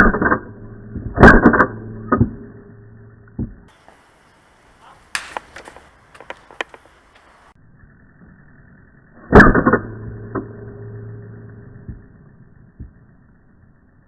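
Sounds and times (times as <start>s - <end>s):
steady low hum: 0.0s - 14.0s
airsoft gunshots: 4.8s - 6.7s.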